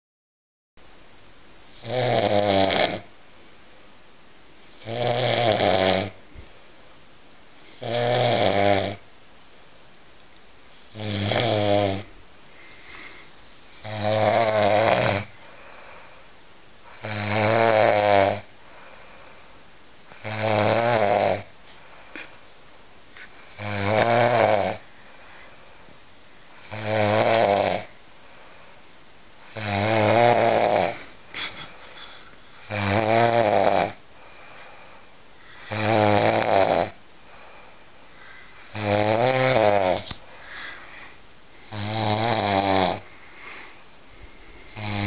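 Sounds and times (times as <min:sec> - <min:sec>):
loud snoring: 0:01.7 - 0:03.1, 0:04.7 - 0:06.2, 0:07.6 - 0:09.0, 0:10.7 - 0:12.1, 0:13.8 - 0:15.7, 0:16.9 - 0:18.5, 0:20.1 - 0:21.5, 0:23.4 - 0:24.8, 0:26.6 - 0:27.9, 0:29.4 - 0:34.0, 0:35.6 - 0:37.0, 0:38.6 - 0:40.1, 0:41.6 - 0:43.7, 0:44.5 - 0:45.0.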